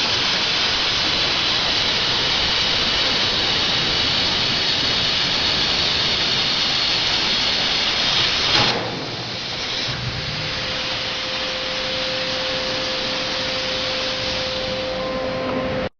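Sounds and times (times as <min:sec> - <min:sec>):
plasma cutter hissing: 0:00.0 - 0:15.3
steady hum: 0:00.0 - 0:15.9
sharp pop: 0:08.4 - 0:10.1.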